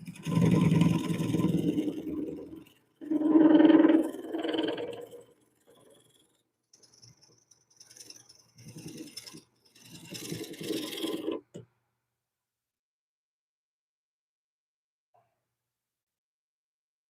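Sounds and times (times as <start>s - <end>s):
tool scraping wood on lathe: 0.0s - 11.6s.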